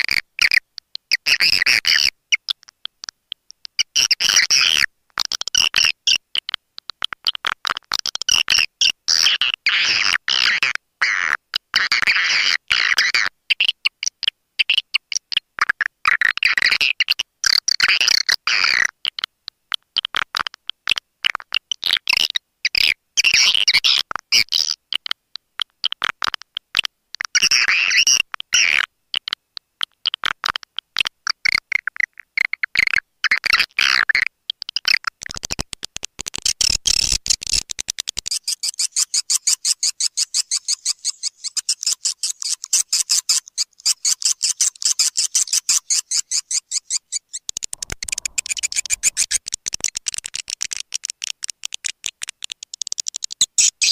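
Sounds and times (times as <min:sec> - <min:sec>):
fast high dry clicks: 0:34.5 - 0:53.9
swiftlet chirping and trills: 0:38.2 - 0:50.8.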